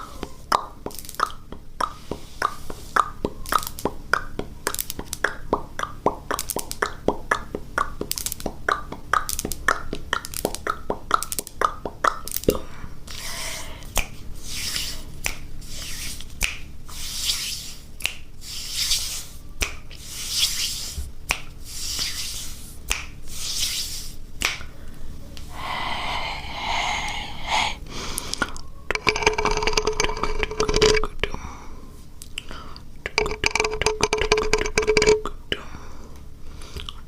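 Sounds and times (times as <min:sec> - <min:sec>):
wet mouth sound: 0:00.5 - 0:04.3, 0:25.5 - 0:31.2
breathy hissing puffs: 0:13.1 - 0:15.1, 0:25.4 - 0:28.5.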